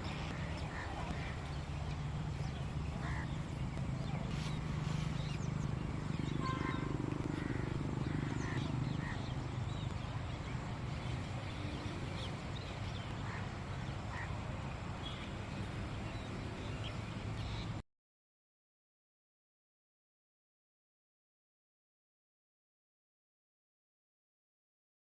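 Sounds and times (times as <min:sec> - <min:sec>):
birds chirping: 0:00.0 - 0:17.8.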